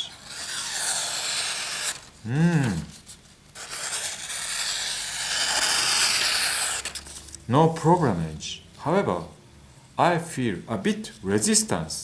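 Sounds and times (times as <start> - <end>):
knife slicing through paper: 0.0 - 2.8, 3.6 - 7.4
person humming: 2.3 - 3.0.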